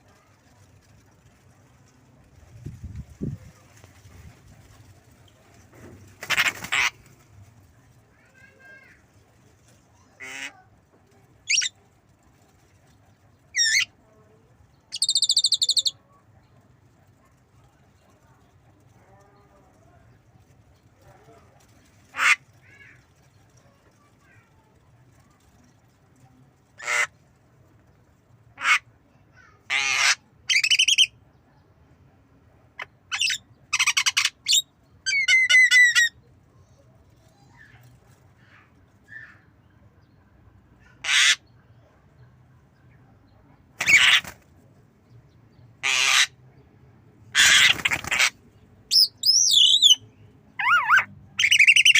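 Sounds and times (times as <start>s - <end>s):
bird harsh calls: 11.5s - 11.7s, 43.8s - 44.4s, 45.8s - 46.4s, 47.3s - 50.0s, 50.6s - 51.9s.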